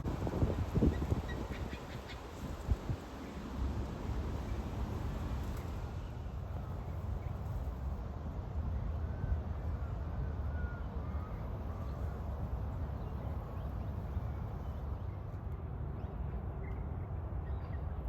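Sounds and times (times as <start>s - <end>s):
wind rumbling on microphone: 0.0s - 8.1s.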